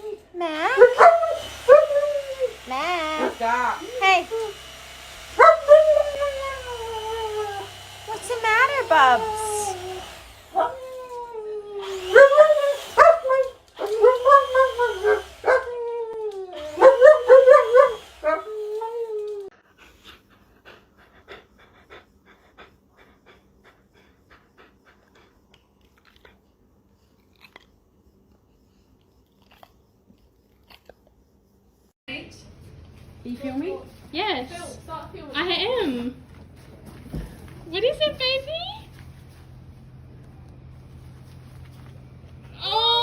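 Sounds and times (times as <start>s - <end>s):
dog whining: 0.0s - 4.6s, 5.4s - 19.6s.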